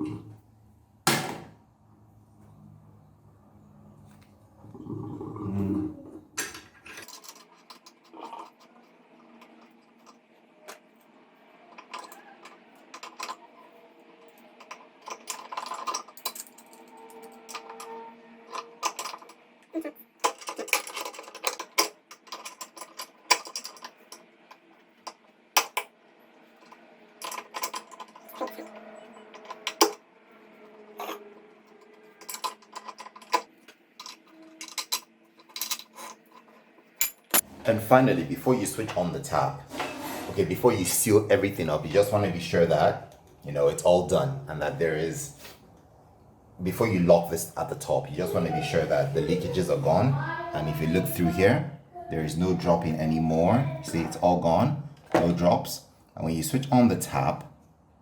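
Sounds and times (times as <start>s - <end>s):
metal tap parts clinking: 32.2s - 33.4s, 34.0s - 37.4s.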